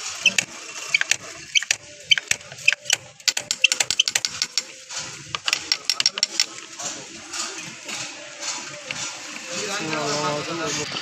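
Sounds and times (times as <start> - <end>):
hand tools clicking on metal: 0.2 - 6.6.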